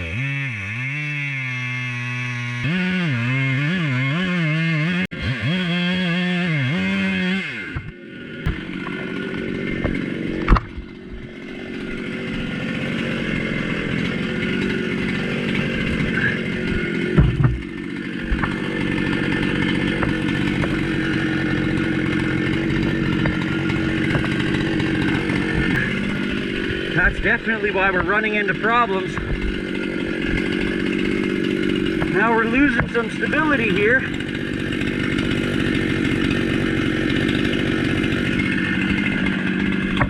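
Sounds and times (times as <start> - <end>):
chainsaw cutting through log: 0.0 - 40.0
sharp knocks: 7.7 - 11.3, 15.5 - 26.9, 29.1 - 33.1.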